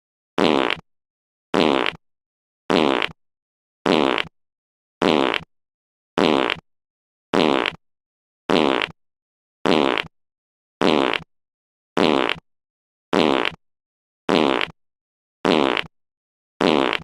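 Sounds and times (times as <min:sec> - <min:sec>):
fart sound effect: 0:00.4 - 0:00.8, 0:01.6 - 0:02.0, 0:02.7 - 0:03.2, 0:03.9 - 0:04.3, 0:05.0 - 0:05.5, 0:06.2 - 0:06.6, 0:07.4 - 0:07.8, 0:08.5 - 0:09.0, 0:09.7 - 0:10.1, 0:10.8 - 0:11.3, 0:12.0 - 0:12.4, 0:13.1 - 0:13.6, 0:14.3 - 0:14.8, 0:15.4 - 0:15.9, 0:16.6 - 0:17.0.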